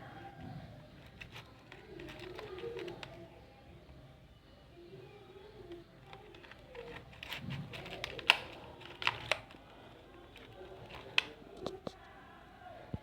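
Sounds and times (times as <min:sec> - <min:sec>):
handling clicks and taps: 0:06.1 - 0:09.6.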